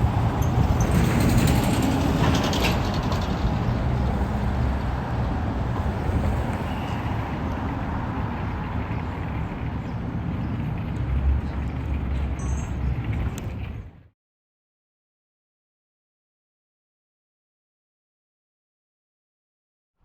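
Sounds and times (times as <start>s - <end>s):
street traffic rumble: 0.0s - 14.1s.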